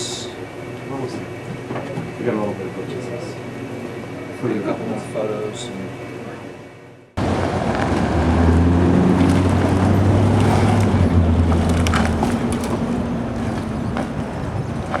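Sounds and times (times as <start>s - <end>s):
engine droning: 0.0s - 15.0s
wood cracking and splintering: 9.1s - 13.0s.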